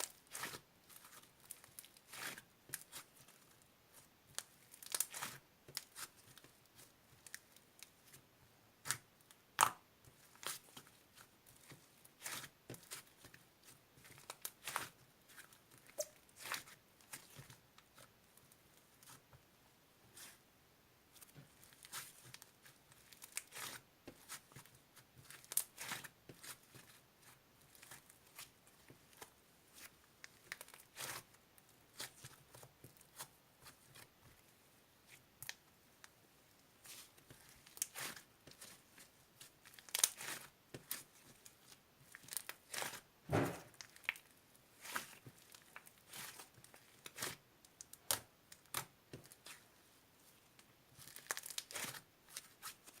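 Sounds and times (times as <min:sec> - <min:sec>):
crinkling and tearing: 0:04.4 - 0:06.9, 0:36.8 - 0:43.0, 0:43.6 - 0:49.6, 0:50.2 - 0:53.0.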